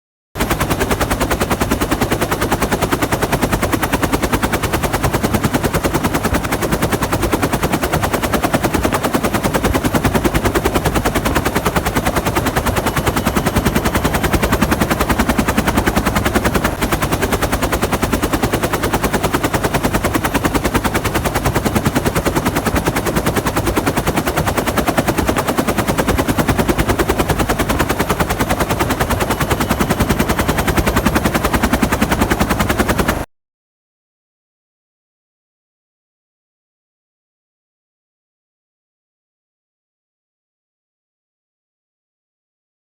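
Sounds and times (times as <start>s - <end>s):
helicopter rotor chopping: 0.4s - 33.3s.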